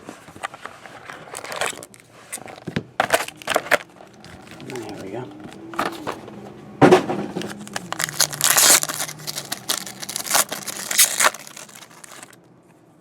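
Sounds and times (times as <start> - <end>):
plastic wrapper crinkling: 0.3 - 6.2, 7.4 - 12.4
sharp plastic rip: 7.4 - 12.4.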